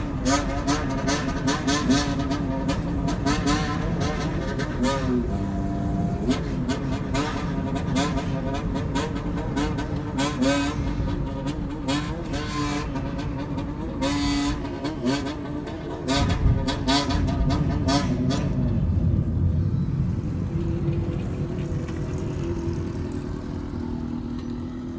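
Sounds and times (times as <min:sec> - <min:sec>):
motorcycle engine revving: 0:20.0 - 0:24.9.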